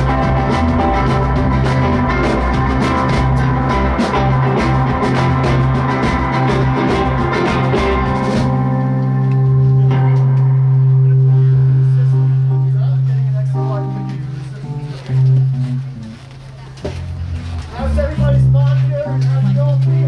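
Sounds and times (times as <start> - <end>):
drums and cymbals: 0.0 - 8.8
live rock band playing: 0.0 - 11.1
steady bass note: 0.0 - 15.9, 17.0 - 20.0.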